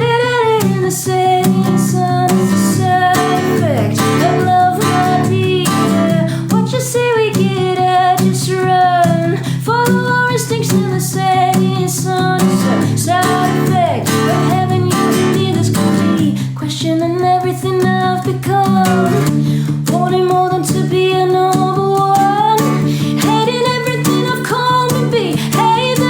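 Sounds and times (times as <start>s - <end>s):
strummed acoustic guitar: 0.0s - 26.0s
woman singing: 0.0s - 26.0s.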